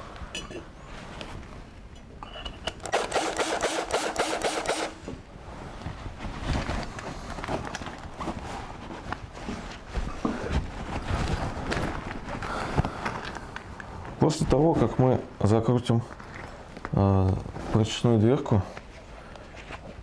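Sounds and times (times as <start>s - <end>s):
cordless screwdriver running: 2.9s - 5.0s.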